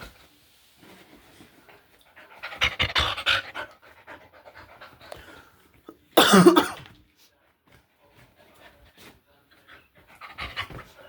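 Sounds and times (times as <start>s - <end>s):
dog panting: 1.6s - 5.7s, 8.2s - 11.0s.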